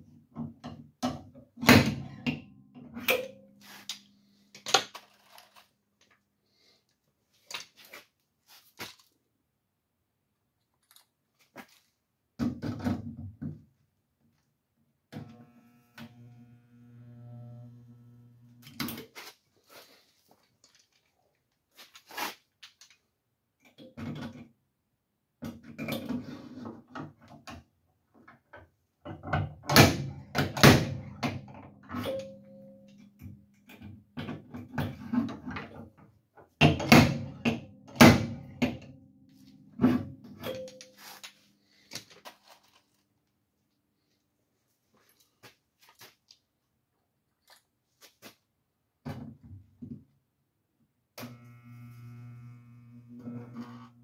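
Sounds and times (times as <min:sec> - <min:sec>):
steady low hum: 0:15.3 - 0:18.6.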